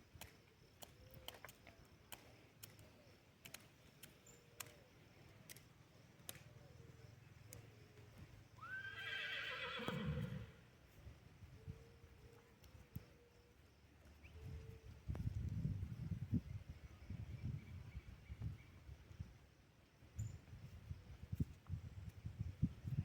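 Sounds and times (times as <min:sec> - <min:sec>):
faint scattered clicks: 0:00.0 - 0:08.2, 0:12.2 - 0:15.6
horse whinnying: 0:08.6 - 0:10.6.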